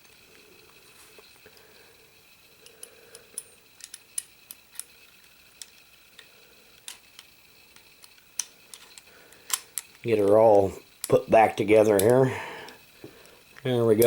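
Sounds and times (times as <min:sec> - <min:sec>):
small metal clicks and taps: 0:02.6 - 0:04.9, 0:05.6 - 0:10.0, 0:12.0 - 0:12.8.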